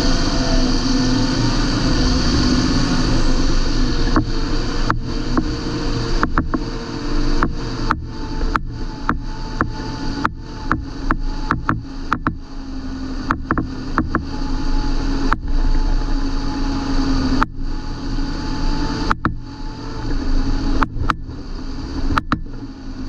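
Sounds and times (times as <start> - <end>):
tractor diesel engine droning: 0.0 - 23.0
sharp clicks: 6.2 - 6.7, 7.4 - 12.4, 13.3 - 14.4, 19.1 - 19.4, 22.1 - 22.6.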